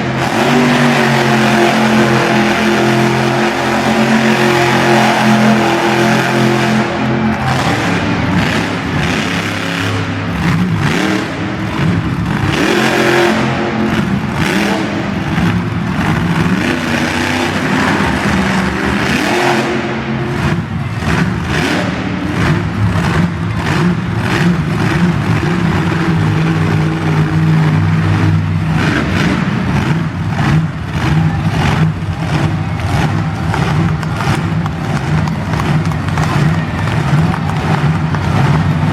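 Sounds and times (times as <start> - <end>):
truck engine revving: 0.0 - 38.9.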